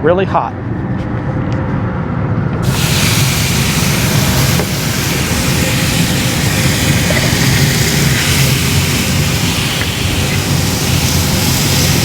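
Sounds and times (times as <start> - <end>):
steak sizzling on griddle: 2.6 - 12.0.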